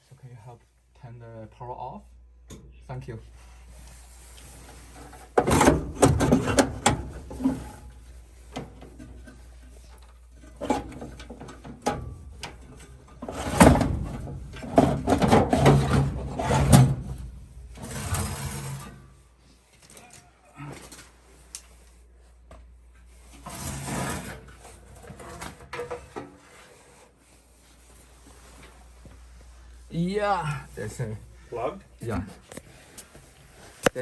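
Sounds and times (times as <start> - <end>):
metal cabinet clattering and scraping: 4.7 - 19.1, 23.4 - 26.4.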